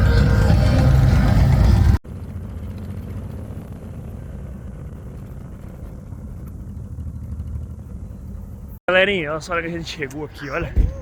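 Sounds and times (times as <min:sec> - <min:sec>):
music: 0:00.0 - 0:01.7
motor vehicle rumble: 0:00.0 - 0:11.0.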